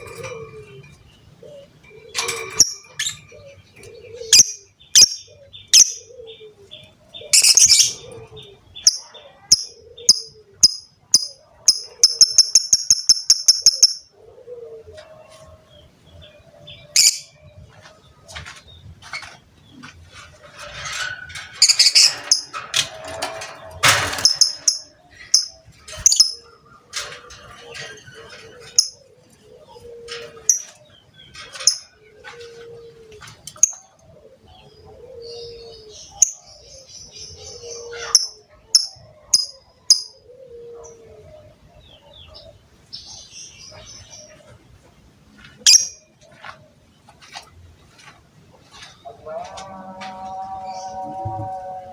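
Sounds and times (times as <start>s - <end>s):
lovebird chirping and squawking: 7.3s - 8.0s, 8.8s - 14.1s, 17.0s - 17.3s, 20.8s - 22.6s, 24.1s - 26.5s, 45.7s - 46.0s.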